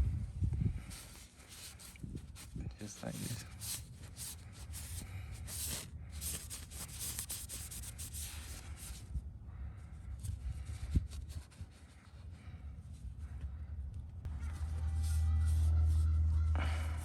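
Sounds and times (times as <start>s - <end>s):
towel rubbing and wiping: 0.9s - 9.0s, 14.3s - 16.3s.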